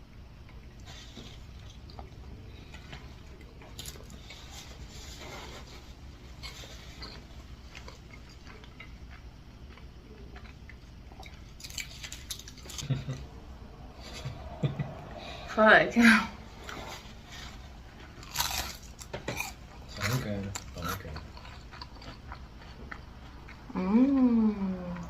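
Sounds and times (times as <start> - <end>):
low room hum: 0.0 - 25.0
chewing: 0.4 - 14.7, 16.6 - 25.0.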